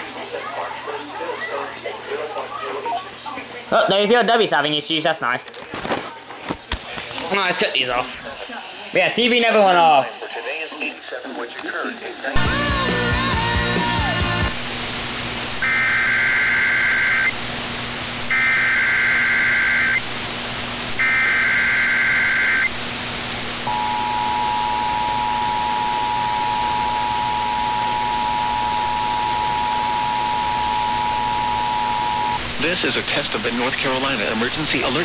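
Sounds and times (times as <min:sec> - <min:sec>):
radio hiss: 0:00.0 - 0:12.6.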